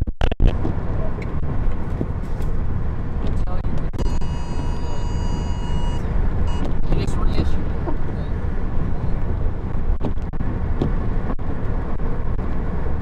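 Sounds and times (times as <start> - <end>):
vehicle driving rumble: 0.0 - 13.0
steady high tone: 4.0 - 6.7.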